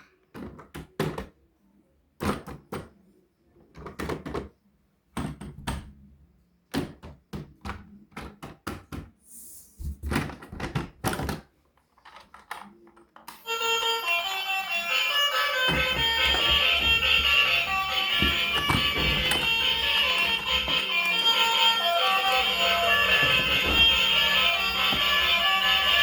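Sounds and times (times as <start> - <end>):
hard plastic knocks and clatters: 10.0 - 12.8, 15.6 - 26.0.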